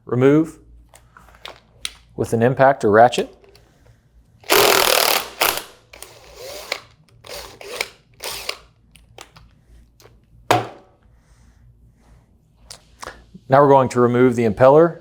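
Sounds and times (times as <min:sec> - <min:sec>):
impact wrench bursts: 0:04.4 - 0:08.7.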